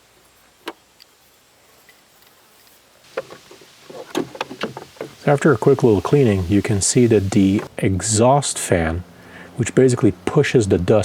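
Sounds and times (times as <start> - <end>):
planer parts clicking: 3.1 - 7.7.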